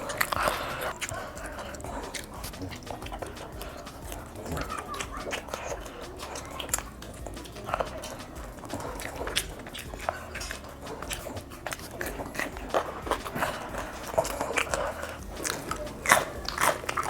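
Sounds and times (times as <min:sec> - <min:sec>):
biting and chewing food: 0:00.0 - 0:17.0
small crunches: 0:00.0 - 0:17.0
wet mouth clicks: 0:00.0 - 0:17.0.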